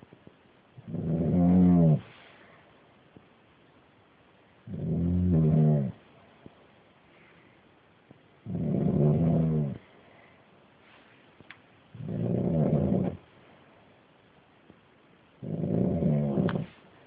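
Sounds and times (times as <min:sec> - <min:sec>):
man snoring loudly: 0:04.7 - 0:06.0, 0:08.5 - 0:09.8, 0:12.0 - 0:13.2, 0:15.4 - 0:16.6.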